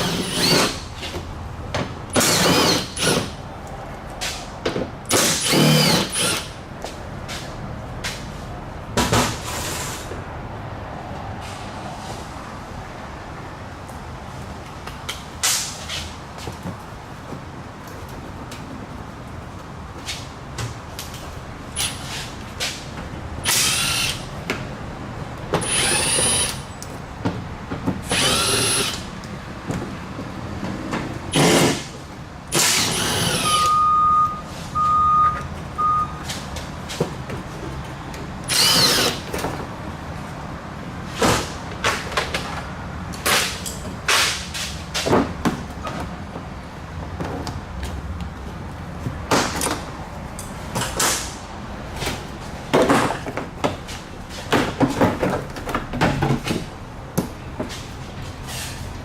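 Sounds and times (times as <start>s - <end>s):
power tool bursts: 2.2s - 3.3s, 5.1s - 6.5s, 23.4s - 24.2s, 25.6s - 26.6s, 28.1s - 29.0s, 31.3s - 31.9s, 32.6s - 33.7s, 38.5s - 39.2s
short beeps: 33.6s - 36.2s.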